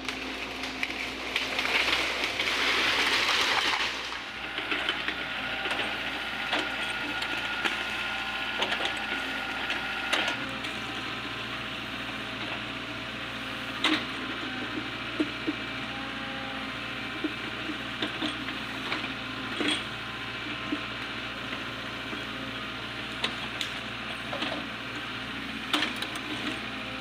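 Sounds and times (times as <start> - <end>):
sharp cracks and knocks: 0.0 - 4.2
small excavator running: 0.0 - 27.0.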